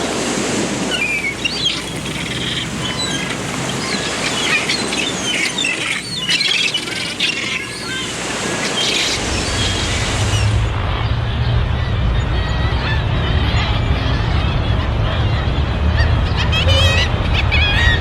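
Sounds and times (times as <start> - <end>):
songbirds chirping: 0.0 - 10.7.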